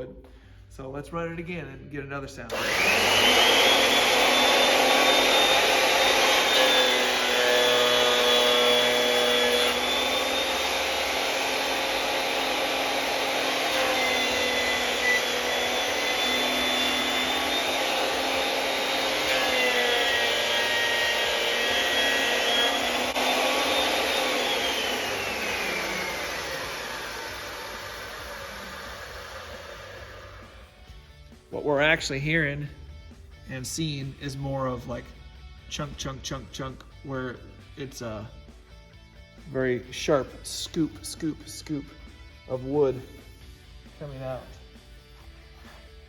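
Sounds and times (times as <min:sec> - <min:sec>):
thickness planer whining: 0:02.5 - 0:31.0.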